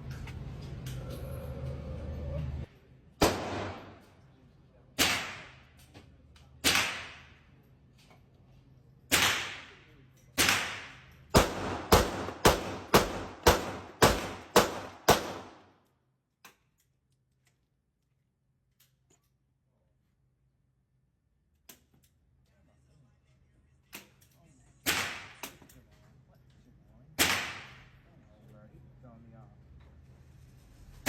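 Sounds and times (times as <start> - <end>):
gunshots with echoing tail: 3.2 - 4.1, 10.4 - 15.6.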